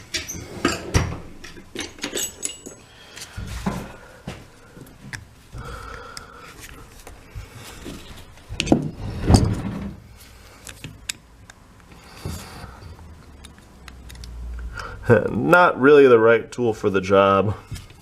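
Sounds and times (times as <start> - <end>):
metal tool scrape: 0.0 - 2.9
metal tools clinking and knocking: 0.0 - 2.9.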